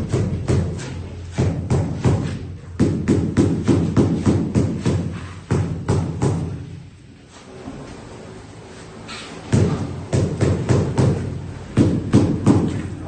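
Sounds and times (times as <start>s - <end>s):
heavy manual pounding blows: 0.0s - 6.9s, 9.5s - 13.0s.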